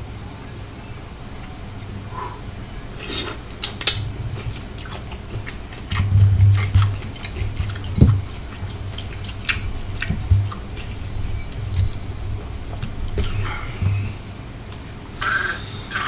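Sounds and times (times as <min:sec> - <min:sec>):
low rumble of chewing: 0:01.0 - 0:16.0
wet mouth-smacking clicks: 0:03.0 - 0:12.0.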